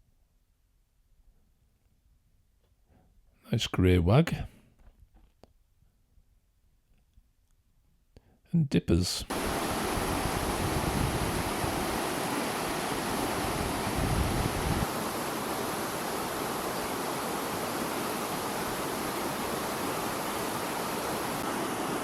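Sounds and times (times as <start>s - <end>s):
stream water rushing: 9.3s - 22.0s.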